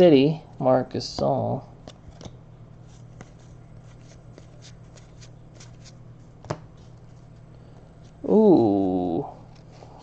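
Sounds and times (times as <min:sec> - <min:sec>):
low steady hum: 0:00.0 - 0:10.0
cards sliding and flipping: 0:01.8 - 0:07.3.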